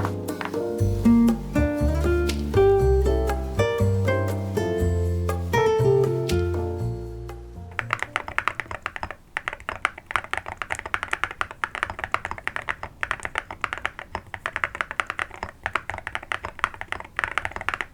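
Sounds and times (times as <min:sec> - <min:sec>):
fast mechanical keyboard typing: 0:07.8 - 0:17.9.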